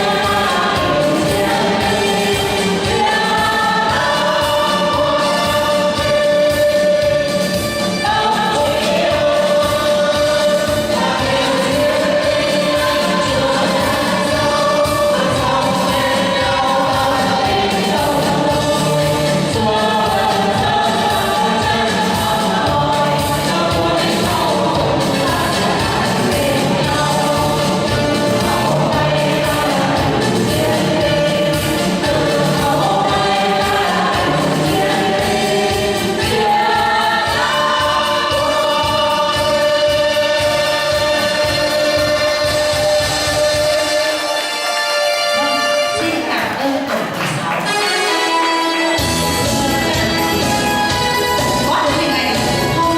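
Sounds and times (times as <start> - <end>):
choir singing a march song: 0.0 - 52.9
instrumental backing with beat: 0.0 - 52.9.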